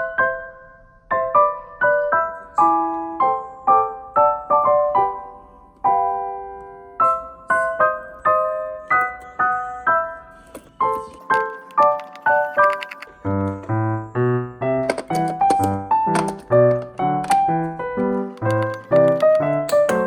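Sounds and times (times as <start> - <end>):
light piano melody: 0.0 - 20.0.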